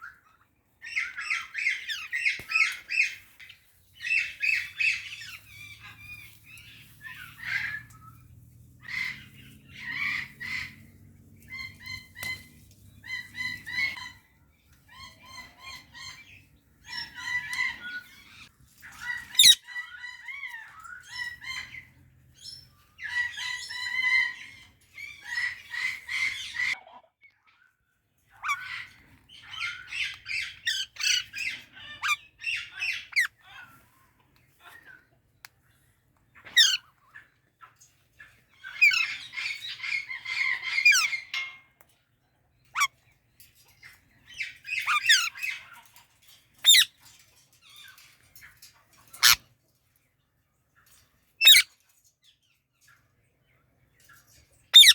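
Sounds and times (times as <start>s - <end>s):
parakeets squawking: 19.4s - 19.6s, 36.5s - 36.8s, 44.8s - 45.3s, 46.6s - 46.9s, 49.2s - 49.4s, 51.4s - 51.6s.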